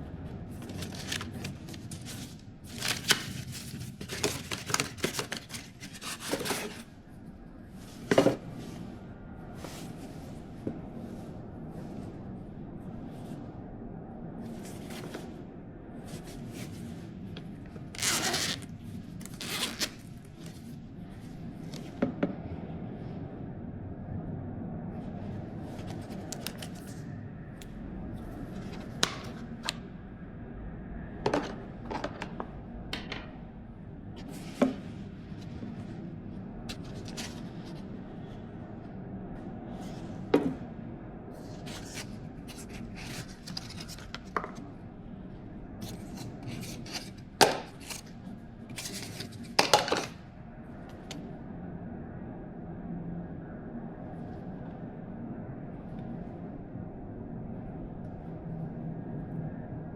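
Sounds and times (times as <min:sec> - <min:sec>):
low room hum: 0:00.0 - 0:59.9
packaging rustling and scraping: 0:00.5 - 0:06.9, 0:17.9 - 0:20.8, 0:25.7 - 0:27.0, 0:36.7 - 0:37.8, 0:41.4 - 0:44.6, 0:45.8 - 0:50.2
packaging clicks and taps: 0:04.0 - 0:06.8.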